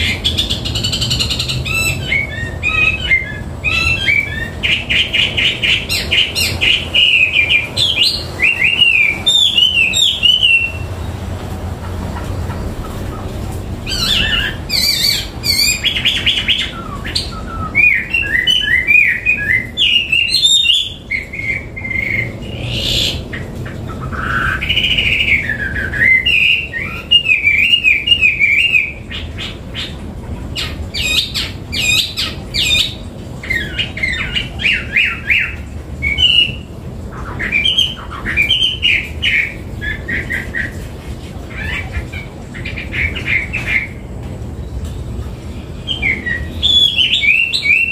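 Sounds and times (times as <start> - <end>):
songbird whistling and trilling: 0.0 - 11.0, 13.8 - 23.2, 24.0 - 29.0, 30.6 - 40.7, 45.8 - 47.9.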